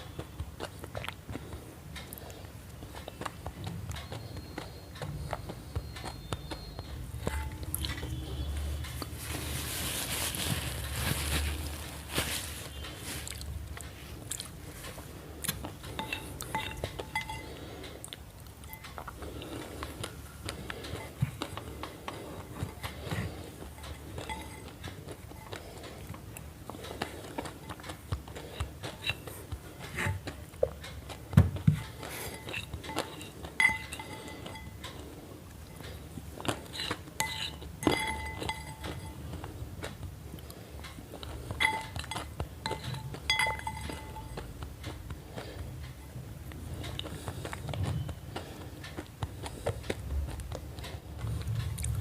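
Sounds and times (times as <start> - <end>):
light clicks and clinks: 22.6 - 25.7, 41.4 - 45.0.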